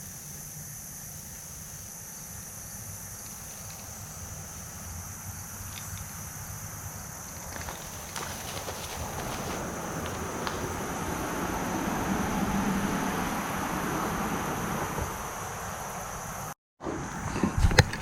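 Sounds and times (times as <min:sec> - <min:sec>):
faint ticks and rustles: 0:00.0 - 0:10.9
insects trilling: 0:00.0 - 0:18.0.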